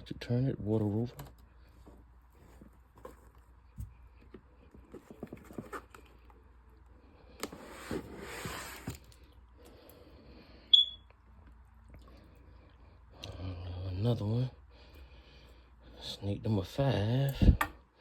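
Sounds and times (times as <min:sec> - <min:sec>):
sharp high squeak: 0:10.7 - 0:11.0.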